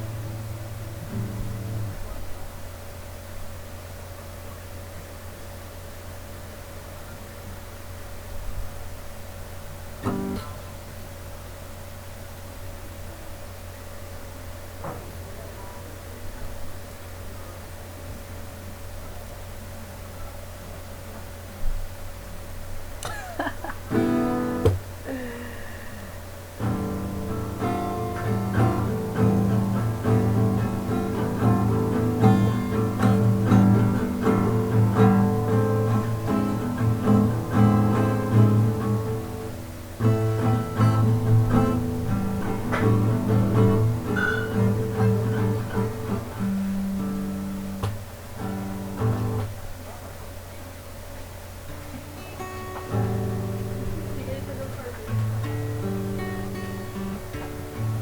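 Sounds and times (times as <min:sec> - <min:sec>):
plucked guitar music: 0:00.0 - 0:02.5, 0:09.9 - 0:10.9, 0:23.0 - 0:25.3, 0:26.5 - 0:49.6, 0:51.6 - 0:58.0.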